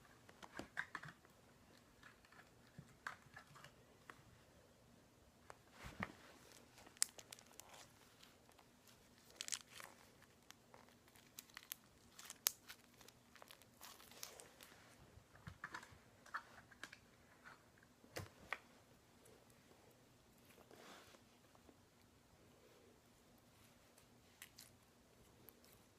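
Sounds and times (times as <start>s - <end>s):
slime crackling and popping: 6.5s - 14.7s.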